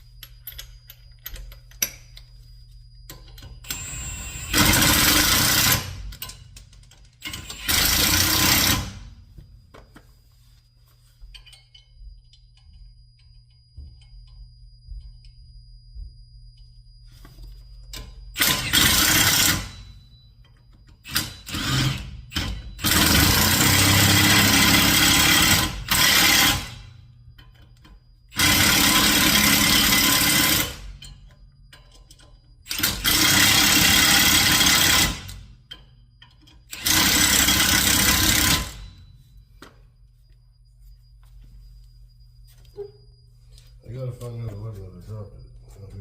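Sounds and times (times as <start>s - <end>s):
power wrench running down nuts: 36.7s - 38.8s.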